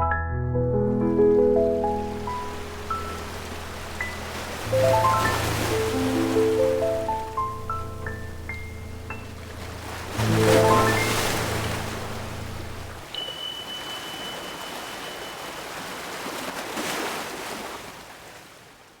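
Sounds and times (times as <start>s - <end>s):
ocean waves washing on shore: 1.0s - 19.0s
high steady tone: 13.0s - 15.6s.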